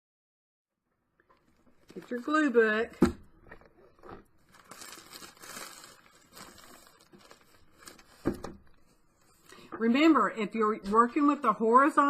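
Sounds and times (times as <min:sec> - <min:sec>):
paper rustling and crinkling: 0:01.4 - 0:02.7, 0:03.4 - 0:09.5.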